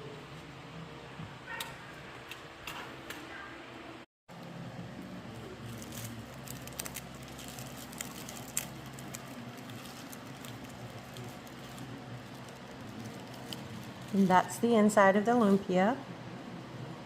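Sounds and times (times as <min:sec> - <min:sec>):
steady low hum: 0:00.0 - 0:17.0
crispy shell crunching: 0:05.2 - 0:14.3.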